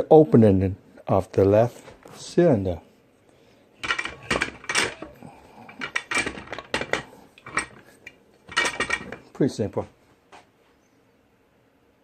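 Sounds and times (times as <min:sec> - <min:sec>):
metal parts clinking: 0:03.8 - 0:05.1, 0:05.7 - 0:09.3.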